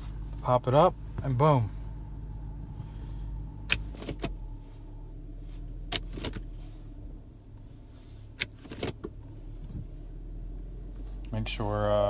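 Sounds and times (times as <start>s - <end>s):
gear shifter clicks and clacks: 0.0s - 1.7s, 2.6s - 4.5s, 5.5s - 6.6s, 7.6s - 10.1s, 10.9s - 11.6s
low hum: 0.0s - 7.6s.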